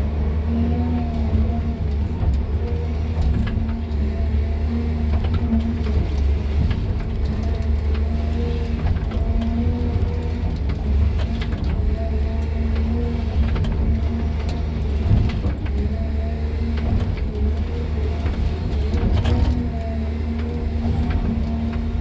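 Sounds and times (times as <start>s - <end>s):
excavator diesel engine rumbling: 0.0s - 22.0s.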